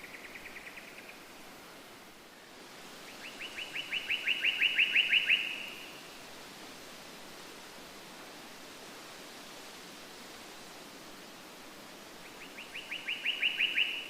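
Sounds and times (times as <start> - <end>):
songbird singing trills: 3.2 - 5.9, 12.4 - 14.0.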